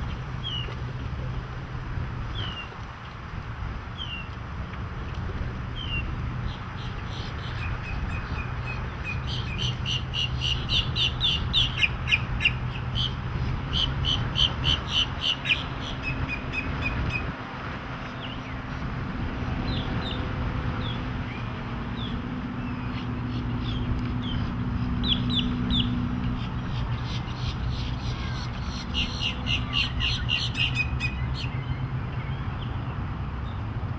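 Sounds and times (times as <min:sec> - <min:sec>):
low engine drone: 0:00.0 - 0:33.9
birds chirping: 0:05.8 - 0:17.3, 0:20.8 - 0:33.6.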